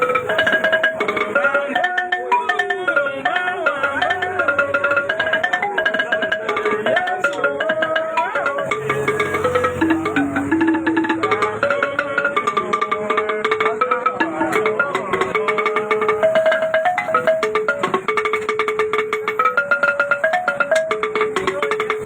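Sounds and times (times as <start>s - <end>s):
fast busy percussion: 0.0s - 22.0s
gliding melody: 8.2s - 12.2s.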